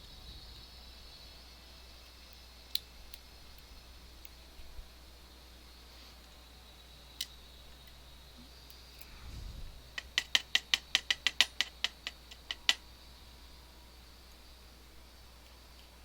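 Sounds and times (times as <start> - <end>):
small metallic clicks: 2.0 - 4.4, 7.2 - 8.0, 9.9 - 12.8
low rumble of handling: 7.8 - 10.2.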